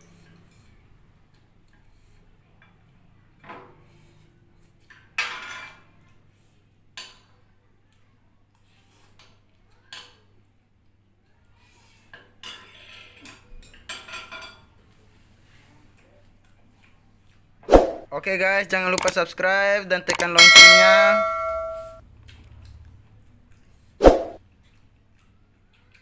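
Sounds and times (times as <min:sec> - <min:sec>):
cutlery clinking on a plate: 0:05.1 - 0:05.9, 0:12.4 - 0:14.7, 0:20.1 - 0:22.0.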